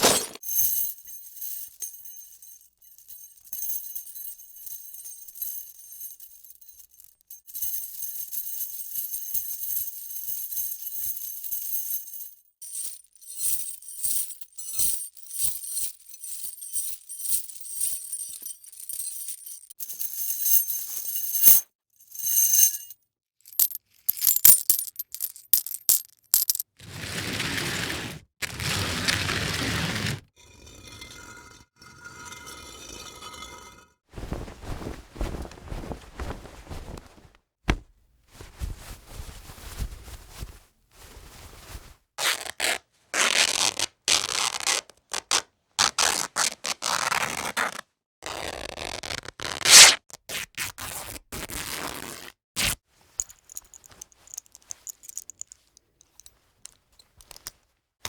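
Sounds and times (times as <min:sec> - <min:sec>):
metallic ringing and jingling: 0:12.7 - 0:21.6, 0:22.2 - 0:26.6.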